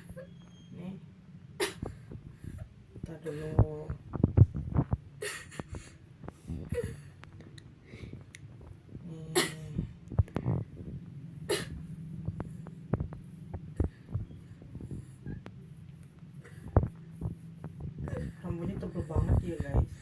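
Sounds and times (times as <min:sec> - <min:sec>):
steady low hum: 0:00.0 - 0:20.0
child coughing: 0:01.6 - 0:02.0, 0:09.2 - 0:09.8, 0:11.5 - 0:11.8.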